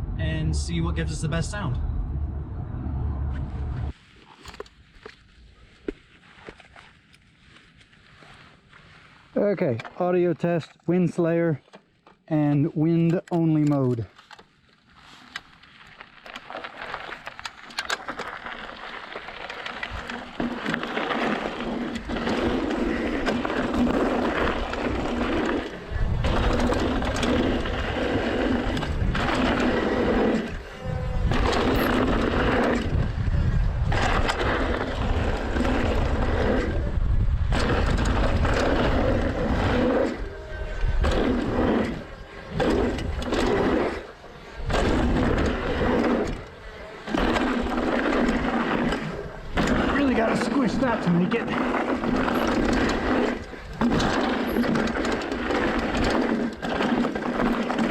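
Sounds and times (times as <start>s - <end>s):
deep wind rumble: 0.0s - 4.0s, 21.6s - 46.5s
bike rattling: 3.2s - 57.9s
tyres rolling over dirt: 14.9s - 57.9s.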